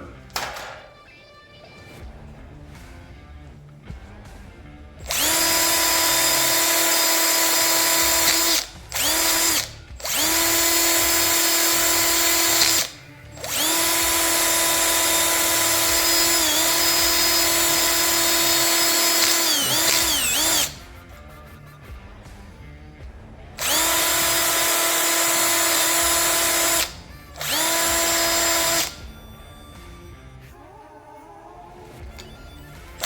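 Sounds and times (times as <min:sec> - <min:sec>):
wire wheel tool whining: 0:05.0 - 0:21.0, 0:23.6 - 0:29.9.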